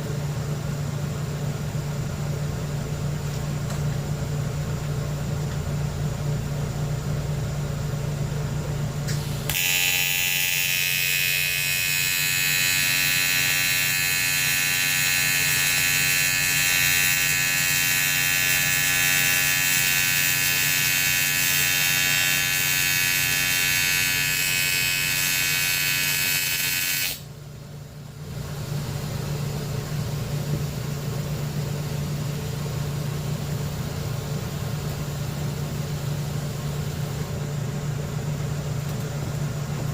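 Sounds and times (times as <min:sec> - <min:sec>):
steady machine hum: 0:00.0 - 0:39.9
welding arc hissing and buzzing: 0:09.1 - 0:27.3.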